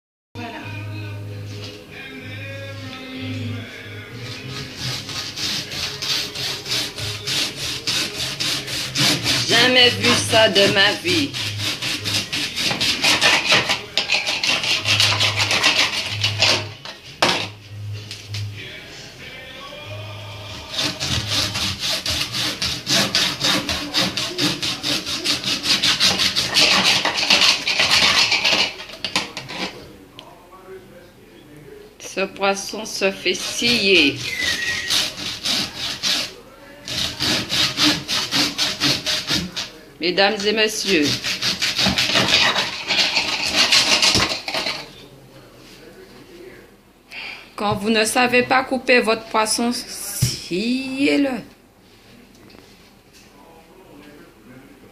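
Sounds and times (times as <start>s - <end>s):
saw cutting through fish: 4.2s - 16.7s, 20.5s - 29.8s, 33.0s - 39.7s, 40.7s - 44.9s
sharp scrape: 4.3s - 16.7s, 20.8s - 29.8s, 40.8s - 44.9s.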